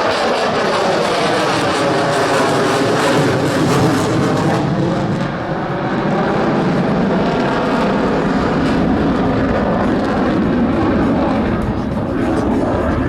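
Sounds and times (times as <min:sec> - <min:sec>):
aircraft engine: 0:00.0 - 0:13.0.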